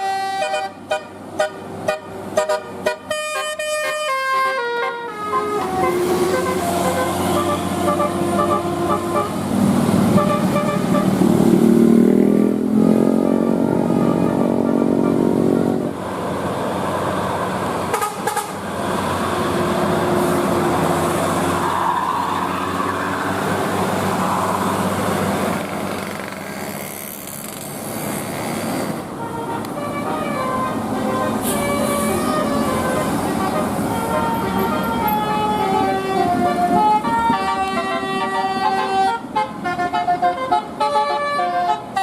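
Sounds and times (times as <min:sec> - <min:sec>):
bus horn playing melodic notes: 0:00.0 - 0:16.0, 0:17.9 - 0:18.7, 0:28.9 - 0:42.0
vehicle noise: 0:00.0 - 0:42.0.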